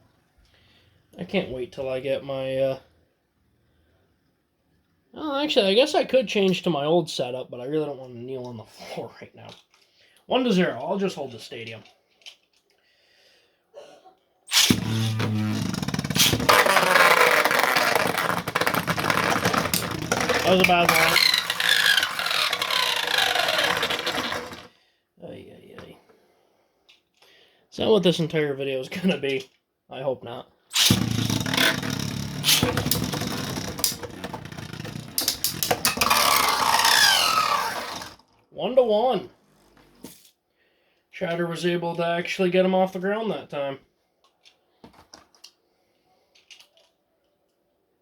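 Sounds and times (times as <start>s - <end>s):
spinning tops colliding: 14.5s - 24.7s, 30.8s - 38.2s
spinning tops whirring: 14.5s - 24.7s, 30.8s - 38.2s.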